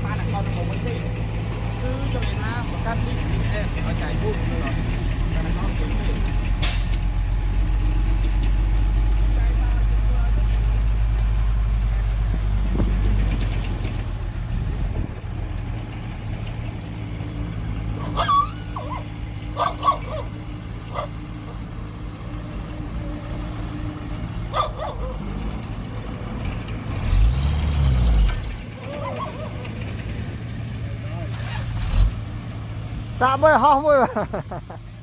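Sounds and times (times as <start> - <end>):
diesel engine running: 0.0 - 35.0
dog barking: 18.0 - 21.2, 24.5 - 25.3, 28.9 - 29.7.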